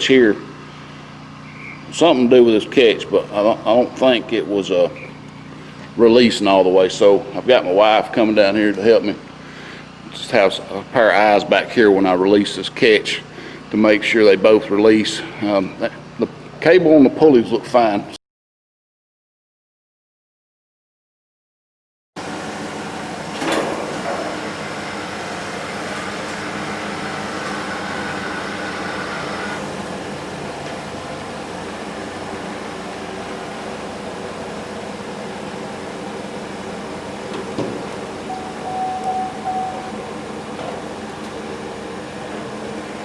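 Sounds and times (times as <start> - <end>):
machine humming: 22.2 - 43.0.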